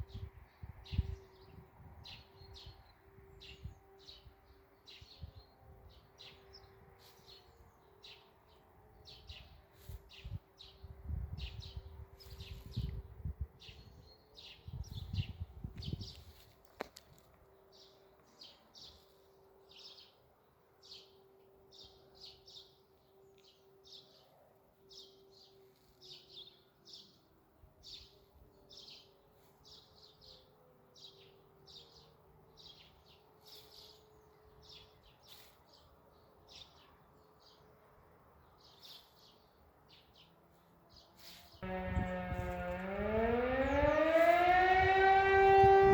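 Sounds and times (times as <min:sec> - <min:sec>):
distant siren tone: 0:00.0 - 0:10.0, 0:41.6 - 0:45.9.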